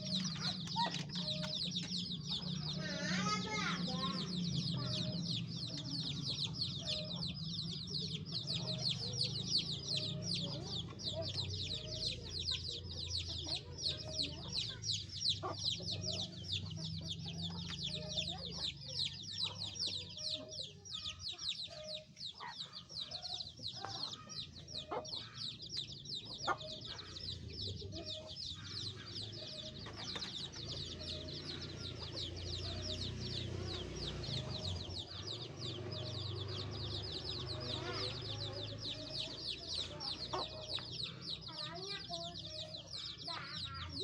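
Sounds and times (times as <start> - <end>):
chicks peeping: 0.0 - 44.0
hen clucking: 0.0 - 44.0.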